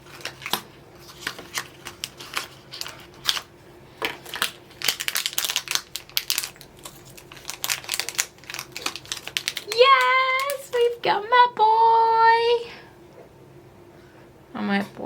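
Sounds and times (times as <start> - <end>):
packaging crinkling and rustling: 0.0 - 11.1.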